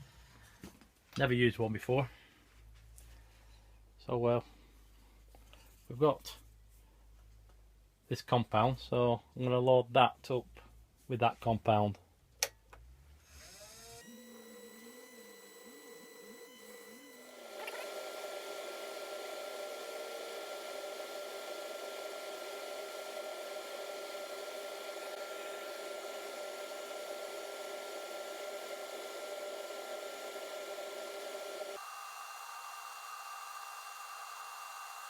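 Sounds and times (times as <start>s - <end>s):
wood lathe whirring hum: 13.2s - 35.0s.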